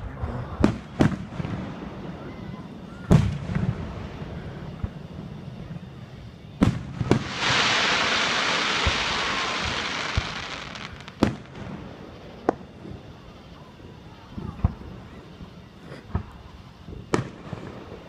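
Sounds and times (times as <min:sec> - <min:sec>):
firework crackling hiss: 0:00.6 - 0:18.0
firework shells bursting: 0:06.6 - 0:11.5.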